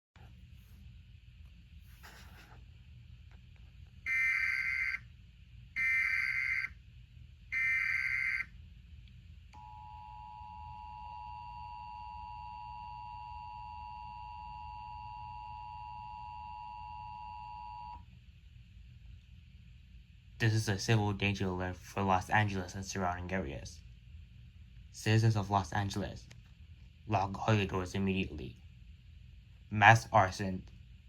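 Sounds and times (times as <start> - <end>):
screeching digital data bursts: 4.1 - 5.0, 5.8 - 6.7, 7.6 - 8.5.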